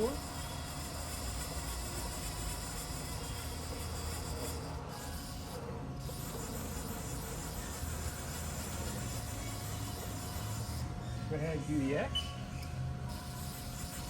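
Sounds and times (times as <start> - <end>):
lathe axis whine: 0.0 - 14.0
low electrical hum: 0.0 - 14.0.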